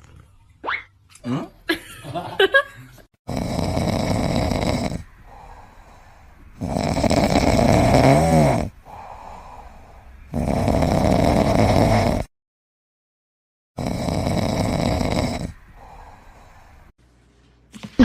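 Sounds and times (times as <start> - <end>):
pet snoring: 3.3 - 5.6, 6.6 - 9.7, 10.3 - 12.3, 13.8 - 16.5
quiet breaths: 3.6 - 11.7, 14.1 - 17.0.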